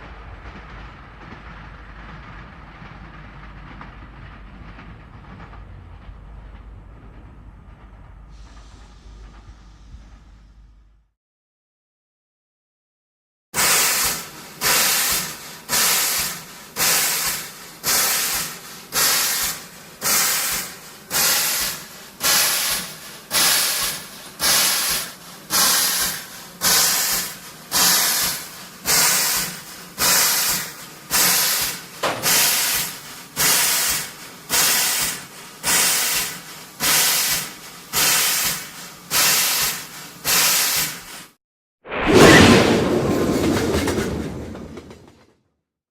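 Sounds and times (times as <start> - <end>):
steam locomotive chuffing: 0.0 - 11.1, 13.6 - 41.4.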